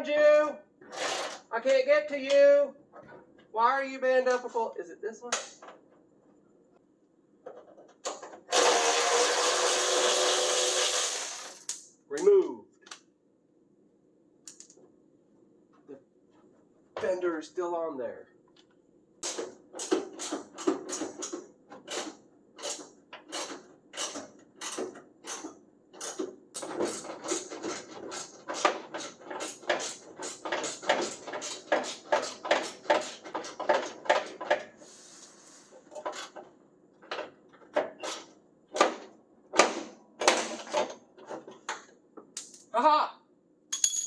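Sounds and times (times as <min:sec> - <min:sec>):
hand tools clicking and knocking: 0:19.2 - 0:34.7.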